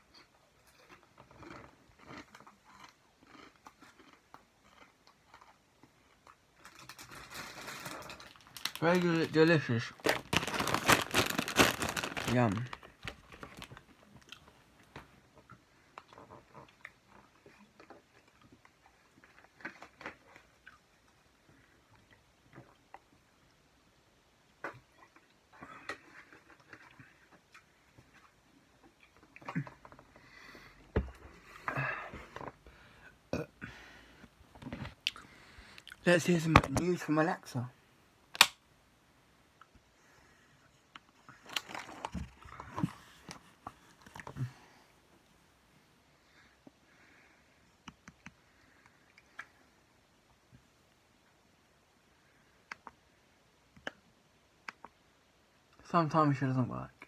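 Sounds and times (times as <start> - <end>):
chips being crunched and chewed: 0.7 - 14.5, 41.3 - 42.9.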